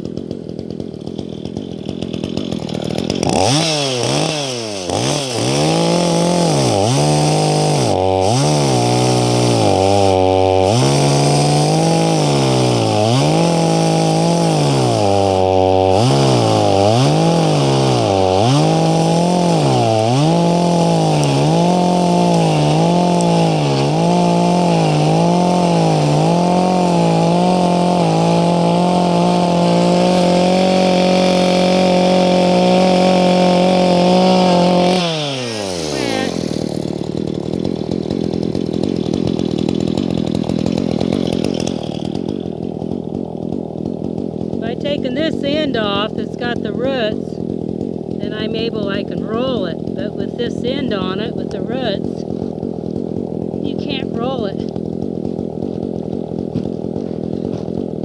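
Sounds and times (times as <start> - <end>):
chainsaw cutting through log: 0.0 - 58.0.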